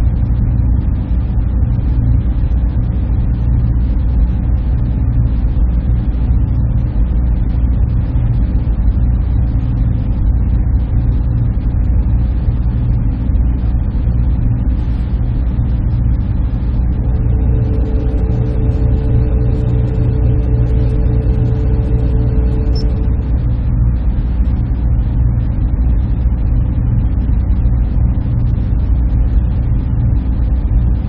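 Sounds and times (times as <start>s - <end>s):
server room machines humming: 10.3s - 31.0s.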